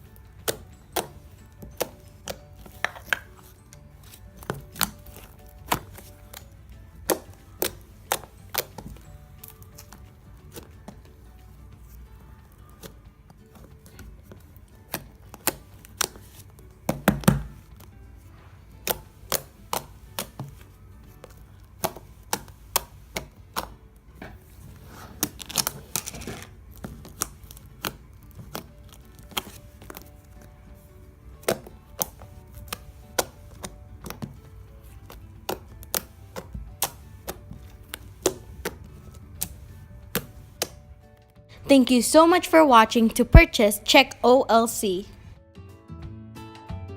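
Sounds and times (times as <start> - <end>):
quiet background music: 0.0 - 46.9
slime crackling squish: 24.4 - 41.0.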